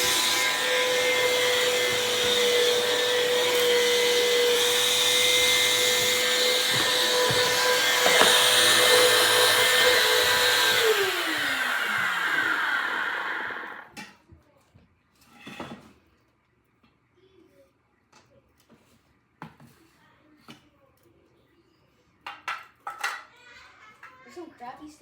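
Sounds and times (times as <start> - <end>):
vacuum cleaner running: 0.0 - 13.9.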